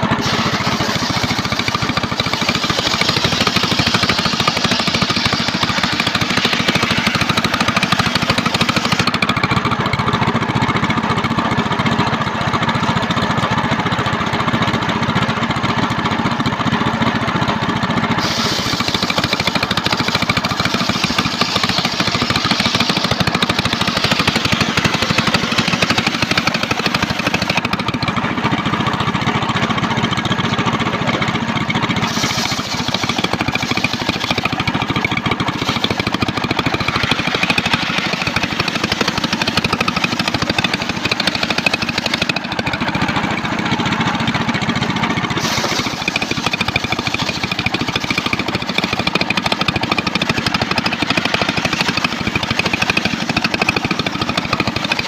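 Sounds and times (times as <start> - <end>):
circular sawmill running: 0.0 - 55.0
high hiss: 18.2 - 27.3.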